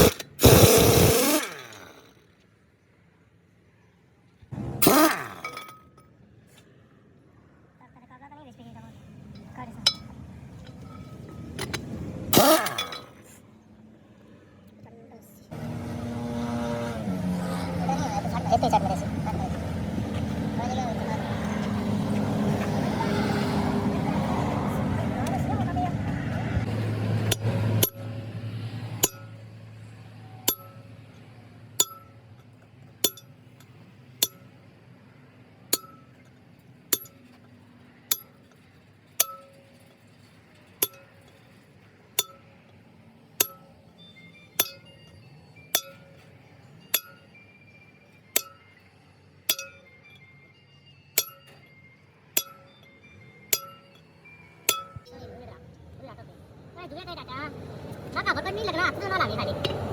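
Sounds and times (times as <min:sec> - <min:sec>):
hammer blows on steel: 0:44.6 - 0:45.0, 0:46.9 - 0:47.3, 0:49.5 - 0:49.9, 0:51.2 - 0:51.7, 0:52.3 - 0:52.9, 0:53.5 - 0:54.1, 0:54.7 - 0:55.1.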